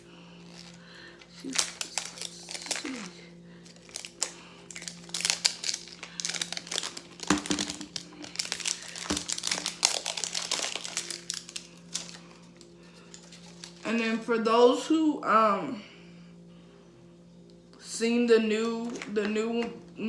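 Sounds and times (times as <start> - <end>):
plastic packaging crinkling: 0.0 - 14.0.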